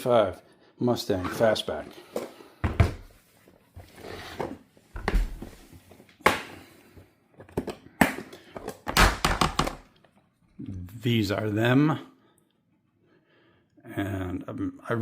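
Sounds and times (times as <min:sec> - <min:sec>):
heavy breathing: 0:12.1 - 0:13.8.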